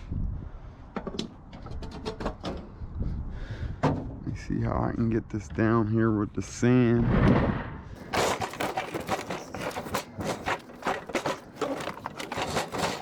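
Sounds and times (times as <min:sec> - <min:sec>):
footsteps: 0:08.0 - 0:13.0
refrigerator dragged across sand: 0:08.0 - 0:13.0.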